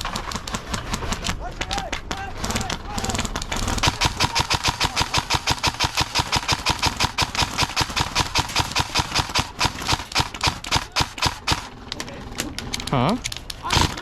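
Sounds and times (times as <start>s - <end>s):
airsoft rifle rapid shots: 0.0s - 14.0s.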